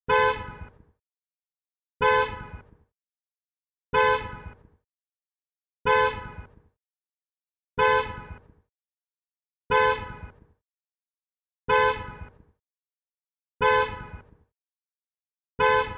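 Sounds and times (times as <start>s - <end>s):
car horn honks: 0.1s - 0.8s, 2.0s - 2.6s, 3.9s - 4.6s, 5.8s - 6.5s, 7.8s - 8.4s, 9.7s - 10.4s, 11.7s - 12.4s, 13.6s - 14.3s, 15.6s - 15.9s.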